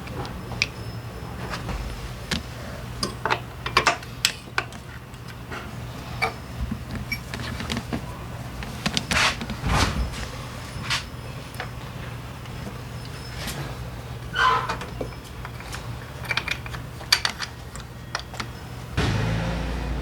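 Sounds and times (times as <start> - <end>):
metal tools clicking and knocking: 14.7 - 18.5.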